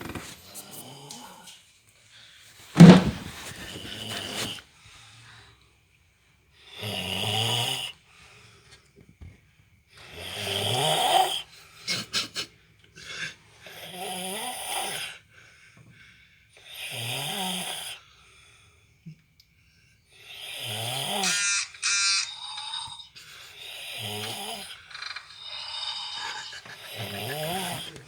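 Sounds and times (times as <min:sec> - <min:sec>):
person snoring: 0:20.3 - 0:28.0.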